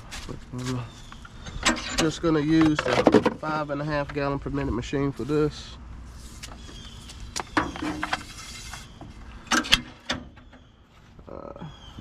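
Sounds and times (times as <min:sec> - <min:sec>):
equipment clicks and clunks: 0:01.2 - 0:04.3, 0:09.5 - 0:10.6.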